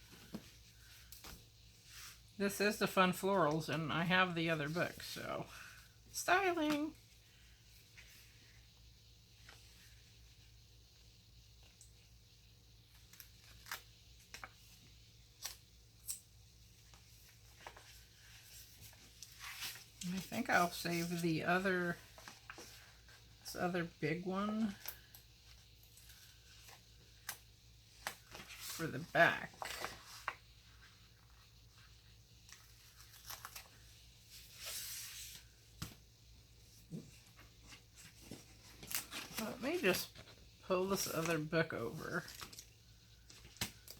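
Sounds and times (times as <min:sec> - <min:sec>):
paper rustling: 0:28.0 - 0:36.0.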